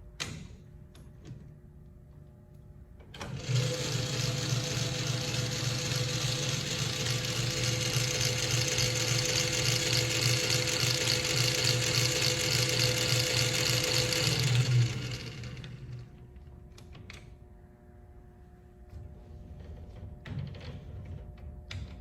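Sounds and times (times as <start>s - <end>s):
metal lathe running: 3.4s - 16.1s.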